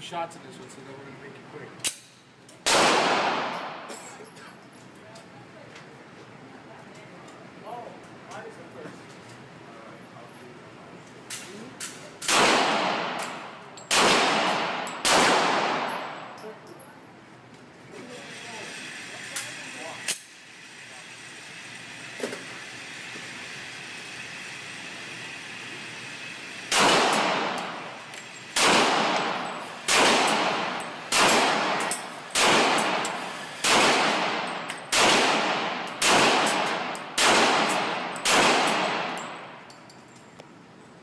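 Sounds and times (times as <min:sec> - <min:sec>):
pistol shots echoing: 0:02.6 - 0:03.9, 0:12.3 - 0:16.4, 0:26.7 - 0:39.5.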